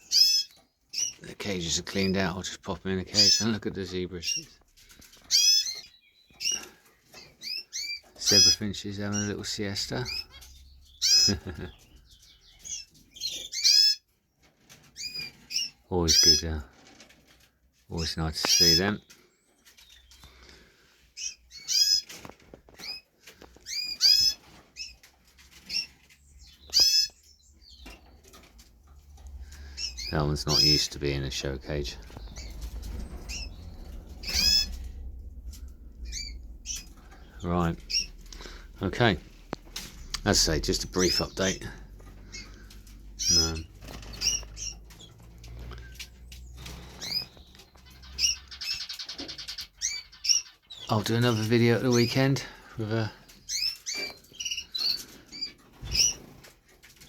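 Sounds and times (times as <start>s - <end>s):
zebra finches calling: 0.0s - 57.0s
low hum: 28.0s - 47.6s
fast buzzy bird trill: 29.7s - 35.0s.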